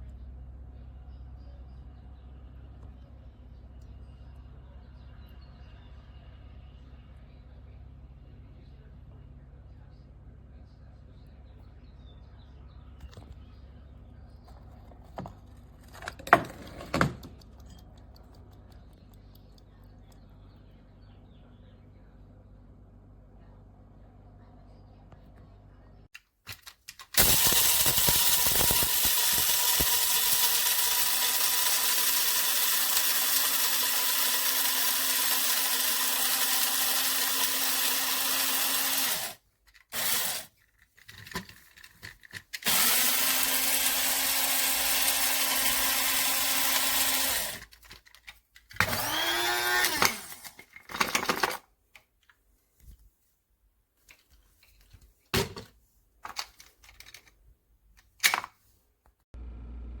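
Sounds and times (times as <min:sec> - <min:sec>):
electric grinder motor: 0:27.2 - 0:40.5, 0:42.6 - 0:47.6, 0:48.8 - 0:50.5.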